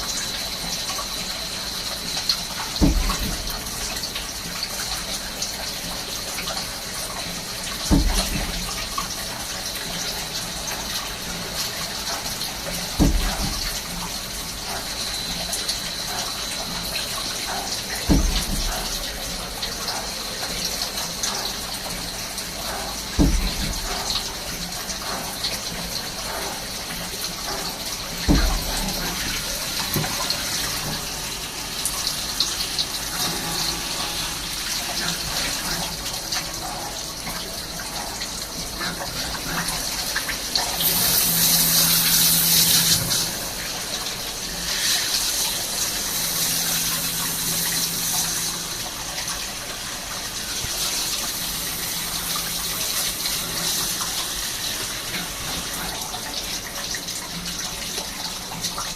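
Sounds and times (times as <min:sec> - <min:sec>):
cutting fluid splashing: 0:27.5 - 0:36.8
lathe running: 0:39.9 - 0:49.0, 0:49.9 - 0:55.4.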